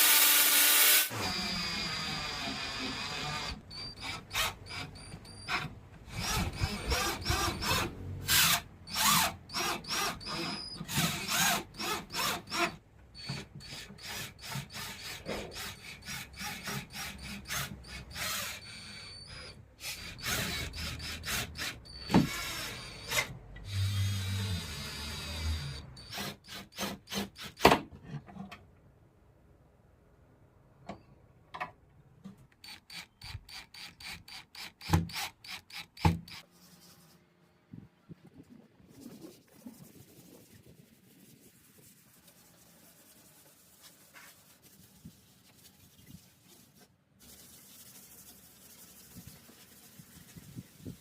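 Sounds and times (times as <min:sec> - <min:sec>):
power drill whining: 0:00.0 - 0:26.8, 0:32.6 - 0:36.4.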